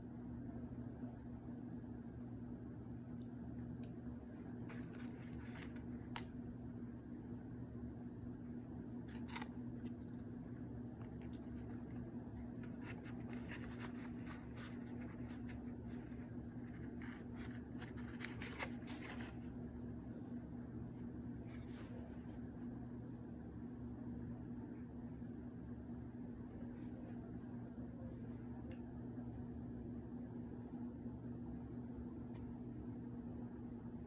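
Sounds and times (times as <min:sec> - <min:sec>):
low electrical hum: 0:00.0 - 0:34.0
rustles taps and scrapes: 0:04.3 - 0:06.3, 0:08.9 - 0:10.3, 0:11.0 - 0:19.5.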